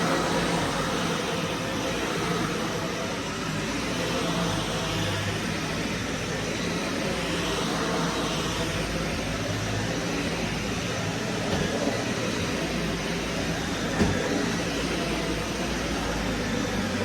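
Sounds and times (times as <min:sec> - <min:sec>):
vacuum cleaner whirring: 0:00.0 - 0:17.0
brief knock: 0:14.0 - 0:14.3.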